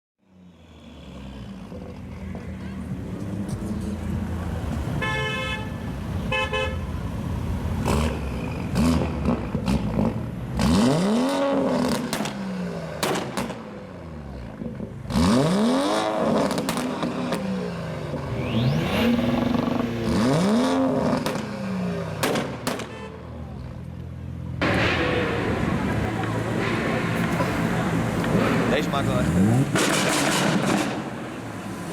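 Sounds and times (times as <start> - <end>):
car engines revving hard: 0.3 - 5.1, 7.0 - 22.9, 24.6 - 31.9
car horn toot: 4.9 - 7.0, 22.7 - 23.5
exhaust pops and bangs: 11.8 - 12.4, 13.0 - 13.8, 16.4 - 17.4, 21.0 - 21.5, 22.2 - 23.0, 24.6 - 31.2.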